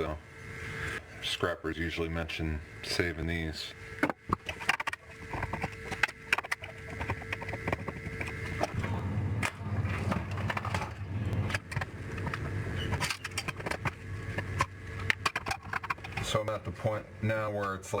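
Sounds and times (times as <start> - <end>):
low steady hum: 0.0 - 18.0
clicks and knocks of hand work: 4.0 - 8.8.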